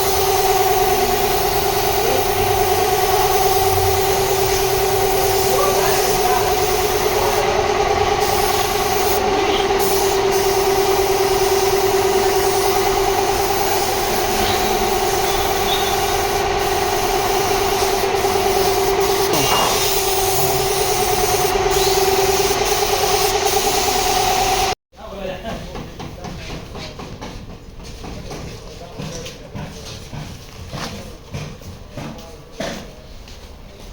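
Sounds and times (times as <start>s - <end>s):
motor humming: 0.0s - 24.7s.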